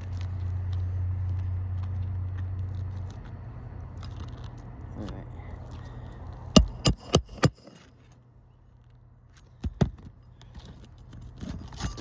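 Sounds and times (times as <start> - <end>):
hammer striking shingle roof: 6.6 - 7.8.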